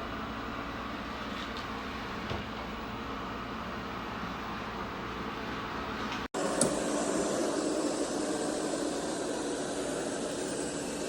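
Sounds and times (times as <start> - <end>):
robot vacuum whirring: 6.4 - 11.0.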